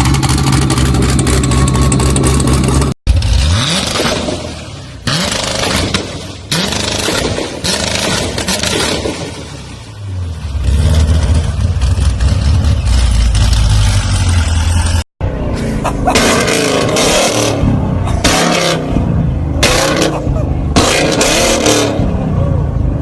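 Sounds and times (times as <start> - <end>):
car engine revving in blips: 10.4 - 22.8.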